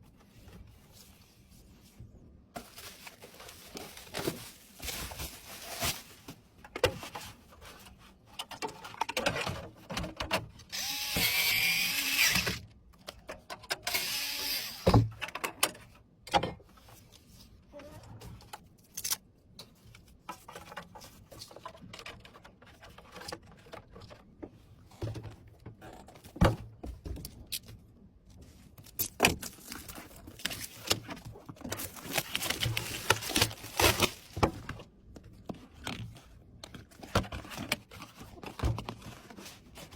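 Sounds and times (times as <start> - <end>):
small power tool whirring: 10.7 - 12.6, 13.9 - 14.9.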